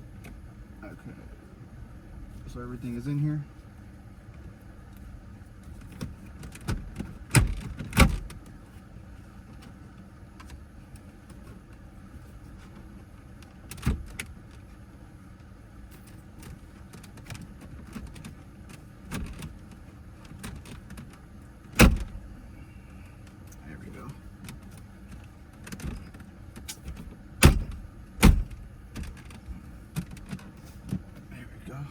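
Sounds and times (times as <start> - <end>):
knocks of trim panels and tools: 26.7 - 29.2.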